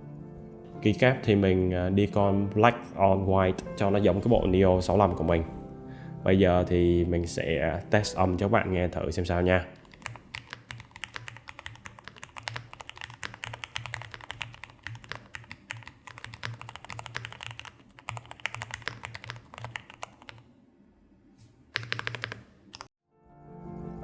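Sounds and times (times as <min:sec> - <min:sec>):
mechanical keyboard typing: 0:09.8 - 0:20.4, 0:21.7 - 0:22.9.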